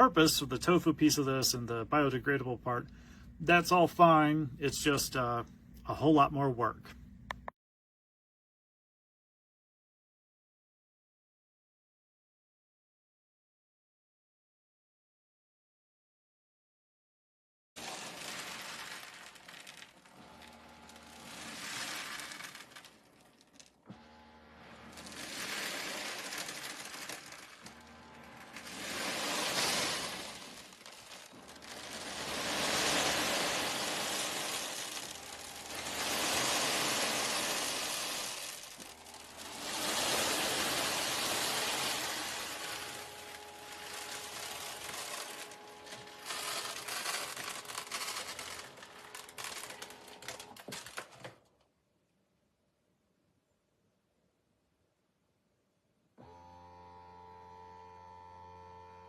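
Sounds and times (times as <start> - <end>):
cat litter pellets rattling: 17.8 - 23.8, 24.8 - 51.4.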